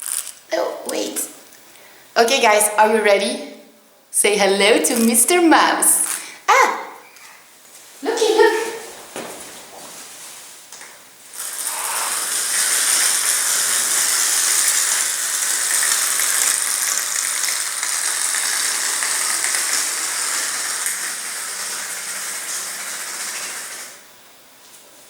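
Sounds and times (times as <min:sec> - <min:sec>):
wind-up toy rattling whir: 0:00.0 - 0:00.4, 0:11.4 - 0:24.0.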